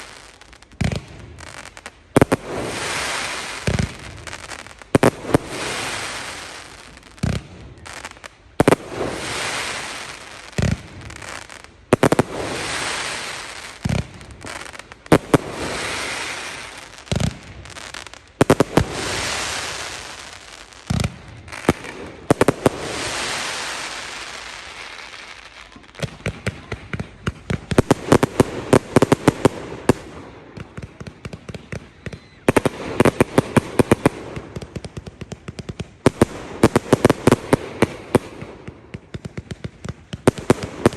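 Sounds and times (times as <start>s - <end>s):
crackling firework pops: 0.0s - 40.9s.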